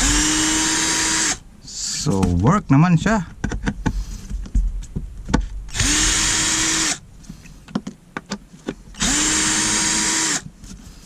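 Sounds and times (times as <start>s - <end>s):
cordless drill motor spinning: 0.0s - 1.4s, 5.7s - 7.0s, 9.0s - 10.5s.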